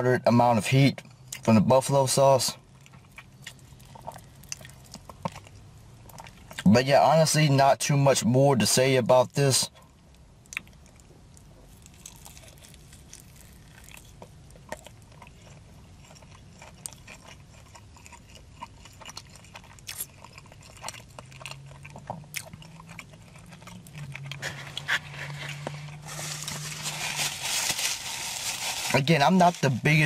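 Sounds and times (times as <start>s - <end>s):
person chewing food: 2.6s - 6.7s, 10.4s - 28.9s.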